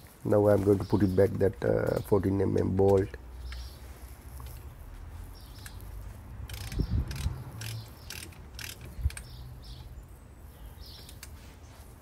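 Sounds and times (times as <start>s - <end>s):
ratchet wrench clicking: 5.5s - 9.4s.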